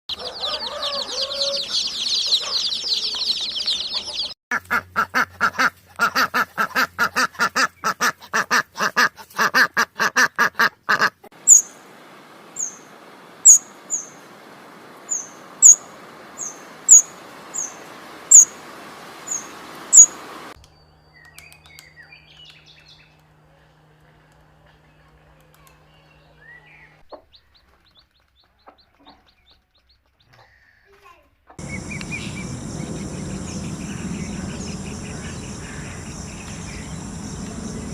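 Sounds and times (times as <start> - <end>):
birds peeping: 0.1 - 4.4, 11.4 - 11.7, 12.6 - 14.2, 15.1 - 18.6, 19.3 - 23.3, 31.6 - 37.9
sharp high bird chirps: 11.5 - 11.7, 15.1 - 15.8, 16.9 - 17.7, 18.3 - 18.5, 19.3 - 20.1, 31.6 - 37.9
steady hiss: 31.6 - 37.9.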